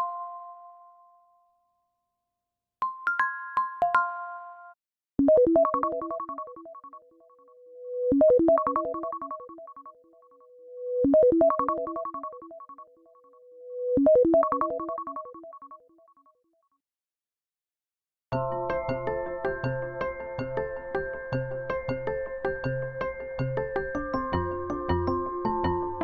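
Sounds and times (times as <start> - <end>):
phone ringtone synthesized notes: 5.3 - 7.2, 8.2 - 9.9, 11.2 - 12.9, 14.0 - 15.7.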